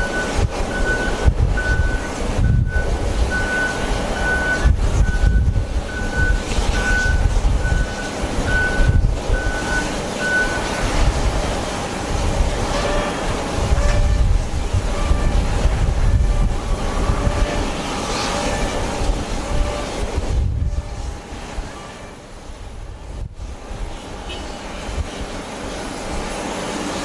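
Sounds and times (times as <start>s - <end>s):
reversing alarm beeping: 0.0s - 11.1s
wind buffeting microphone: 0.0s - 26.5s.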